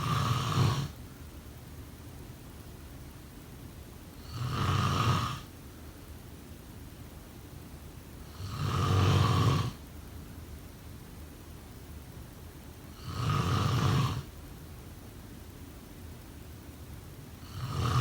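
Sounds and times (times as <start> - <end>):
snoring: 0.0 - 1.0, 4.2 - 5.5, 8.3 - 9.8, 13.0 - 14.3, 17.4 - 18.0.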